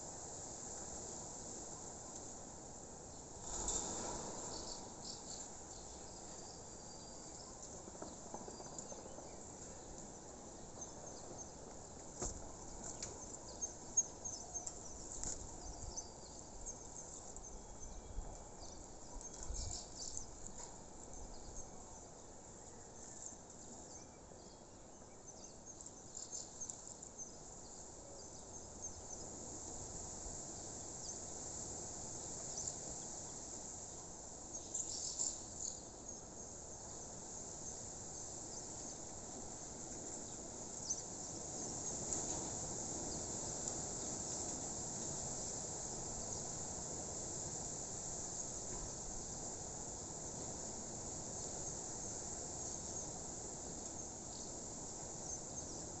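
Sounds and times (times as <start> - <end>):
crickets chirping: 3.4 - 7.6
bird chirps: 3.5 - 7.7.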